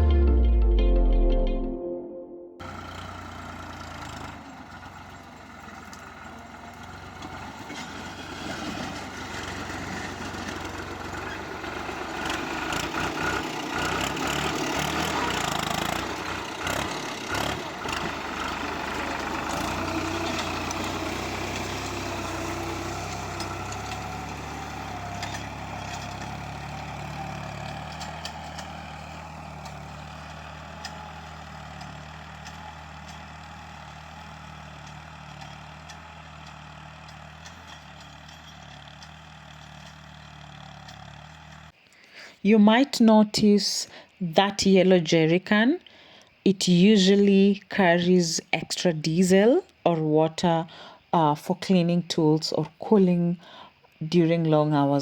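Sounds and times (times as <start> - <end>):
tractor engine running: 2.6 - 41.8.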